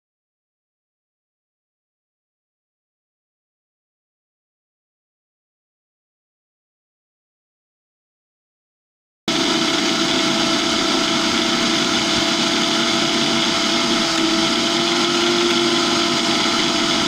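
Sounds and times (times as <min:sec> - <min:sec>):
mixer grinder motor running: 0:09.3 - 0:17.0.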